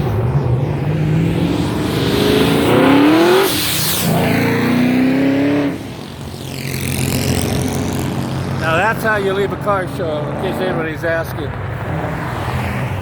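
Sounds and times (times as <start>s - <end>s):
car engine revving: 0.0s - 13.0s.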